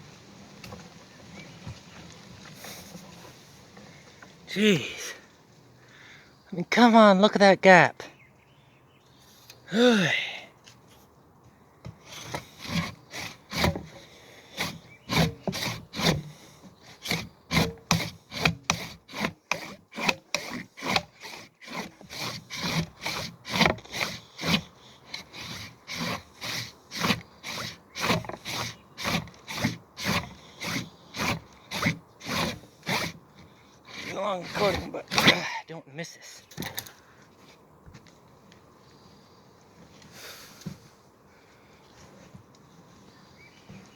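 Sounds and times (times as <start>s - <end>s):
handsaw cutting wood: 11.9s - 35.5s.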